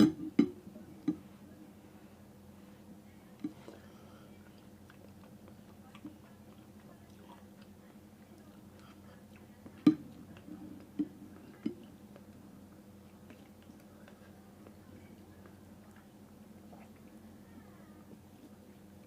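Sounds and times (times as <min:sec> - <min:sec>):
low steady hum: 0:00.0 - 0:19.0
person chewing noodles: 0:08.5 - 0:14.8.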